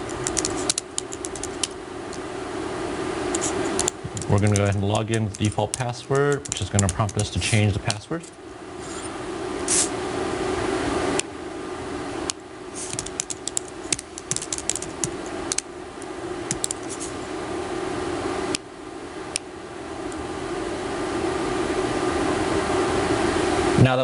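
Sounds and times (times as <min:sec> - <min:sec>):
fan hum: 0:00.0 - 0:24.0
keyboard typing: 0:00.1 - 0:01.8, 0:03.3 - 0:08.0, 0:12.8 - 0:15.6, 0:16.5 - 0:17.0.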